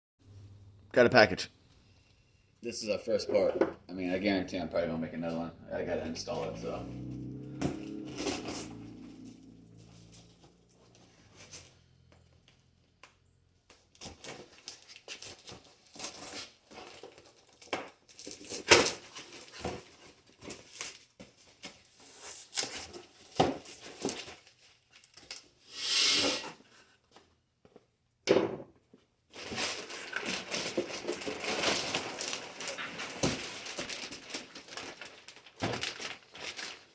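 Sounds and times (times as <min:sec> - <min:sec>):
packaging tearing and crinkling: 0:29.4 - 0:36.9.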